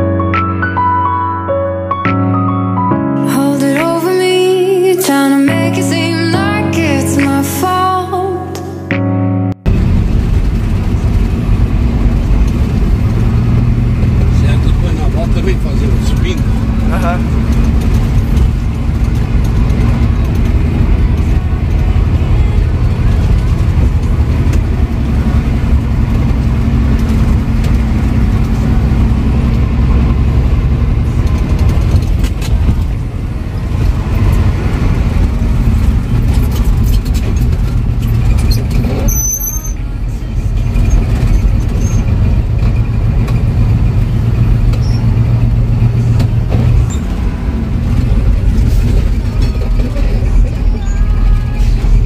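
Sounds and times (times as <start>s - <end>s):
truck engine rumbling: 0.0s - 52.0s
short high squeal: 38.4s - 39.8s.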